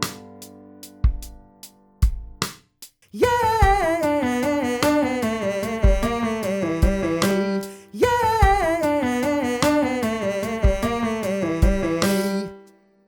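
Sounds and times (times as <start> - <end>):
backing track with drum beat: 0.0 - 4.1, 5.6 - 7.4, 10.6 - 12.3
person singing fast riffs: 3.1 - 12.6.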